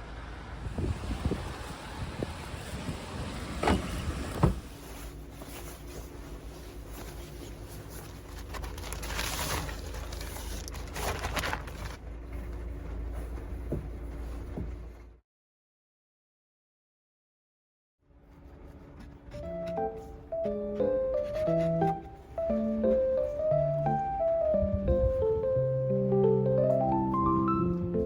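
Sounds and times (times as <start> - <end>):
wind gusting against a van: 0.4 - 5.4, 24.6 - 25.5.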